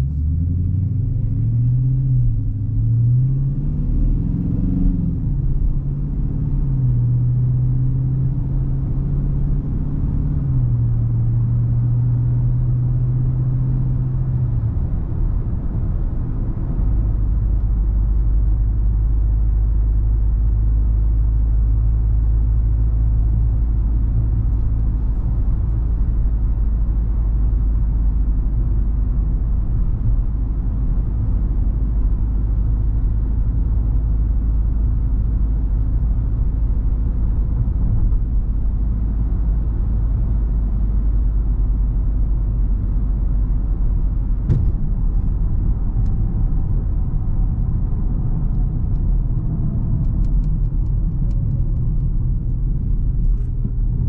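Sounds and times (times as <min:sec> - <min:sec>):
car engine deep rumble: 0:00.0 - 0:54.0.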